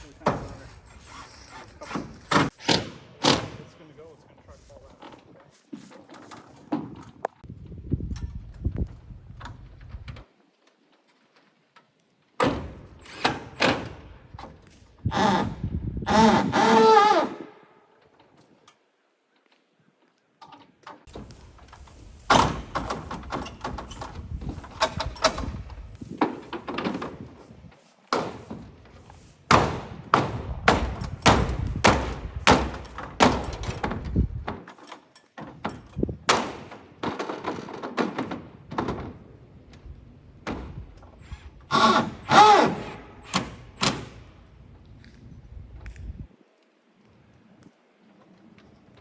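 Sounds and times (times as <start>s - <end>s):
metal roof panels banging and rattling: 1.8s - 3.7s, 12.4s - 14.6s, 21.0s - 44.4s.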